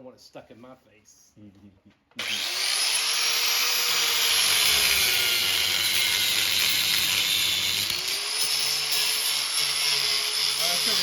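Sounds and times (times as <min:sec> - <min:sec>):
angle grinder cutting steel: 0:02.2 - 0:11.0.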